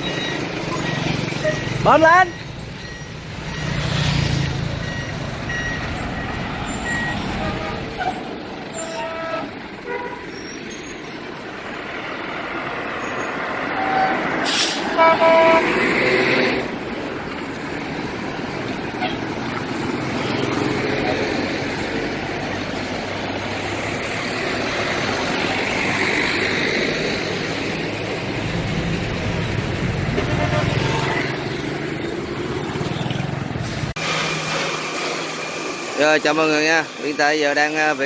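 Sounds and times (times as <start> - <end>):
heavy vehicle engine running: 14.4 - 36.0.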